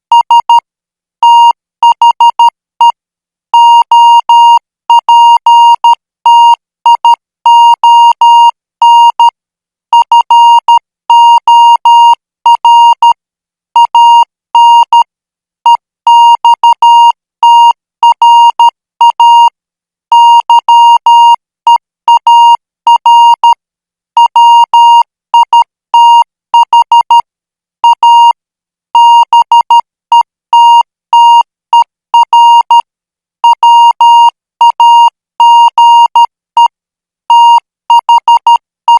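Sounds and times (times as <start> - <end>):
morse code beeps: 32.2 - 32.8, 33.4 - 36.7, 37.3 - 38.9.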